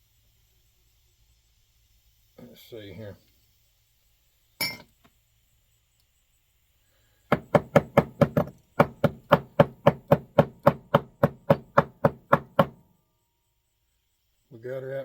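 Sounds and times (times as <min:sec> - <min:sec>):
rapid tapping on metal valve: 0:07.3 - 0:12.8.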